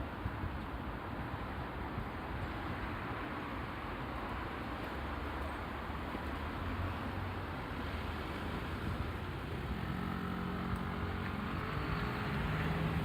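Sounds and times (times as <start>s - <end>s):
road traffic noise: 0.1s - 13.0s
nearby vehicle engine hum: 8.2s - 13.0s.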